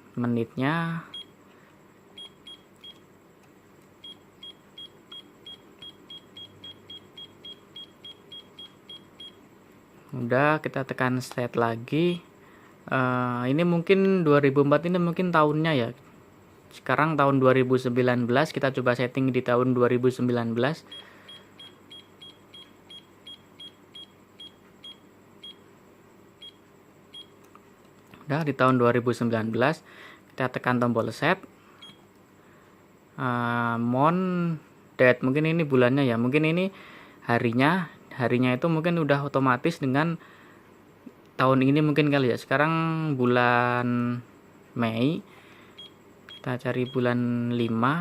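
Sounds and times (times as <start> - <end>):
alarm clock beeping: 4.0 - 9.4, 20.9 - 25.6.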